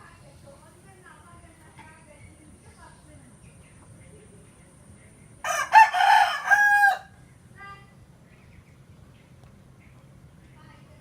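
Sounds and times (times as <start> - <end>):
rooster crowing: 5.4 - 7.2.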